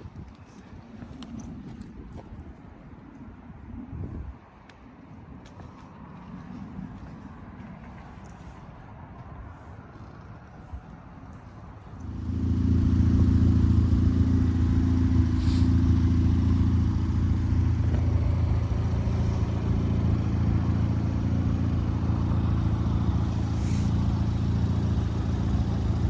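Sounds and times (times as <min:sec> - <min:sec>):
car engine starting and idling: 0:12.0 - 0:26.0.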